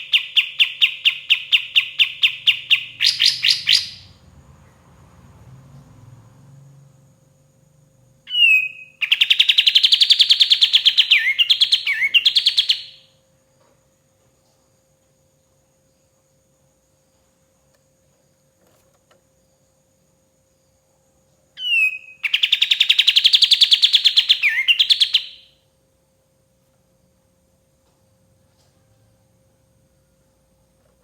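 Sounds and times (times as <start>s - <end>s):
songbird trilling: 0.0s - 4.2s, 8.3s - 13.1s, 21.6s - 25.5s.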